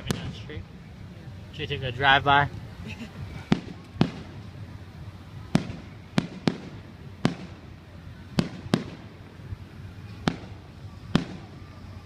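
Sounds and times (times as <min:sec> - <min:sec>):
fireworks bangs: 0:00.0 - 0:00.5, 0:03.4 - 0:11.9
steady low rumble: 0:00.0 - 0:12.0.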